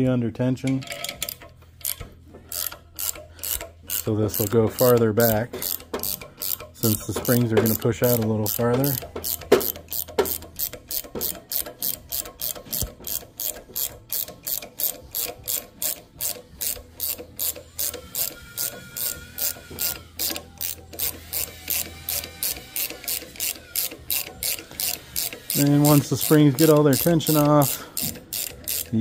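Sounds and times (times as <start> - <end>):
ratchet wrench clicking: 0.8 - 29.0.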